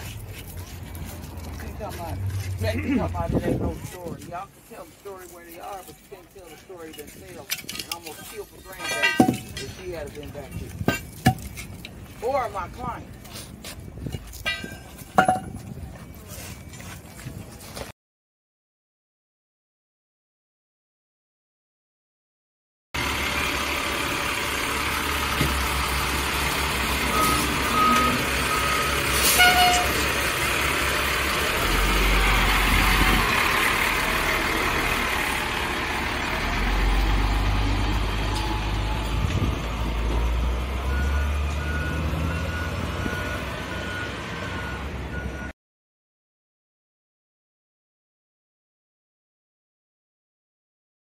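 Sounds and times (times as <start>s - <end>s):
heavy truck engine rumbling: 0.0s - 17.6s, 23.0s - 45.5s
reversing alarm beeping: 26.9s - 30.0s, 40.8s - 45.5s.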